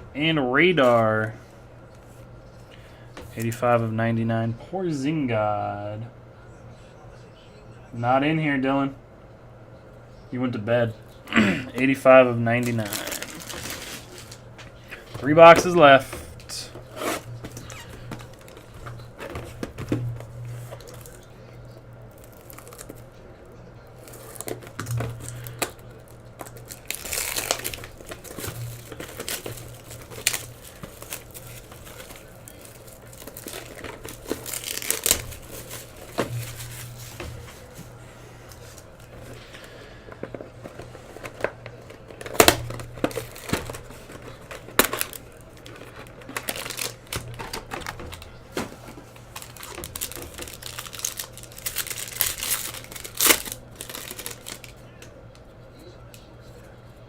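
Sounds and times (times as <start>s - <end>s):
steady low hum: 0.0s - 57.0s
plastic wrappers tearing and crinkling: 12.5s - 21.4s, 22.1s - 23.2s, 23.9s - 37.8s, 38.5s - 54.8s.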